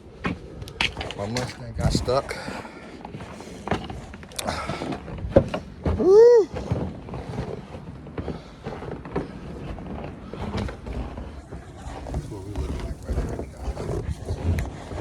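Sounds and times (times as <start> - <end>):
man shouting woo: 6.0 - 6.5.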